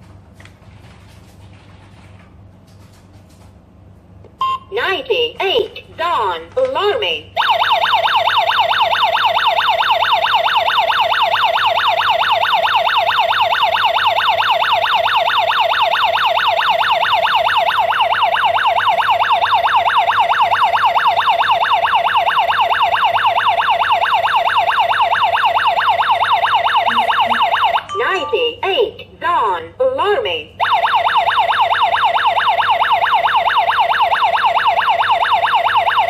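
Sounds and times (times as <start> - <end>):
electronic alarm siren wailing: 7.4 - 27.9, 30.6 - 36.0.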